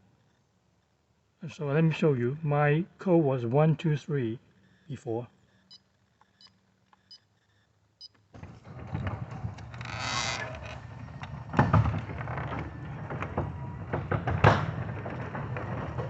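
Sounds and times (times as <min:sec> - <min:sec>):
garage door creaks: 0:08.3 - 0:16.0
garage door opener rumbling: 0:08.3 - 0:16.0
loud clunks: 0:11.0 - 0:16.0.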